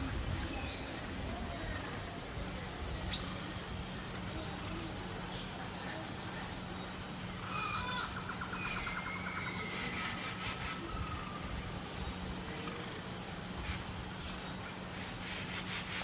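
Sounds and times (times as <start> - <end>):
insect buzz: 0.0 - 16.0
birds calling: 5.2 - 12.3
bird trill: 6.8 - 11.5.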